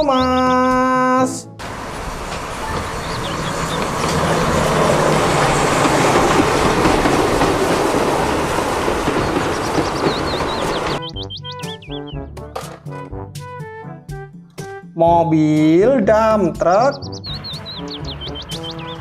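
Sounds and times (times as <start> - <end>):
train wheels clattering: 1.6 - 11.0.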